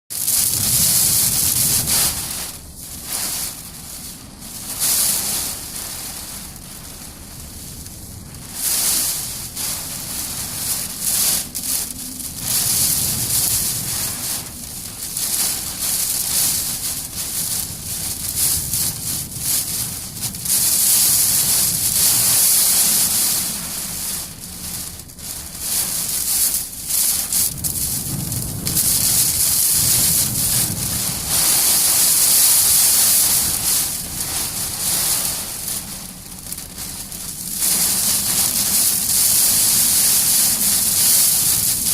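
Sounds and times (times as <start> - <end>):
rain hissing on car body and glass: 0.1 - 41.9
wind buffeting car: 0.1 - 41.9.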